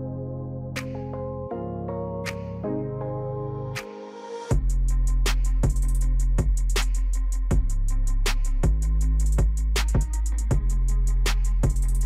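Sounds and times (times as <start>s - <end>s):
music with drum beat and bass: 4.5s - 12.0s.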